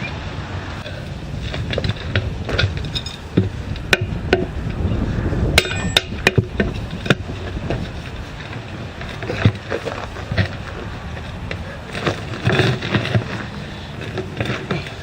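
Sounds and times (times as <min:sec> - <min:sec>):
hand tools striking metal: 0:05.6 - 0:07.2.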